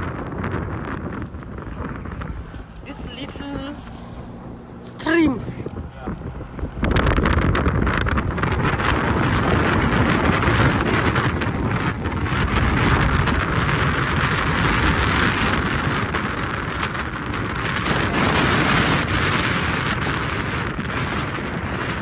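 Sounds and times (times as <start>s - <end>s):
road and engine rumble: 0.0s - 22.0s
wind buffeting microphone: 0.0s - 22.0s.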